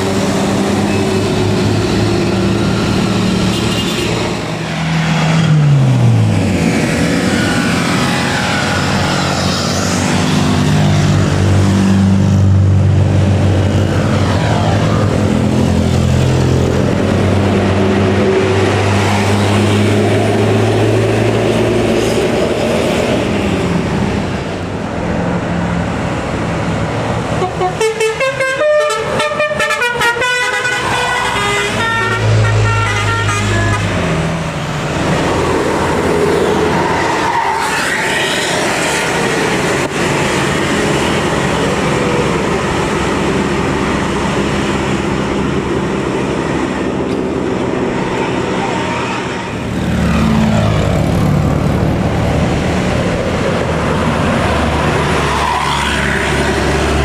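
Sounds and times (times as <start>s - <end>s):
buses running uphill: 0.0s - 57.0s
multi-tone bus horns: 0.2s - 4.5s, 27.2s - 34.3s.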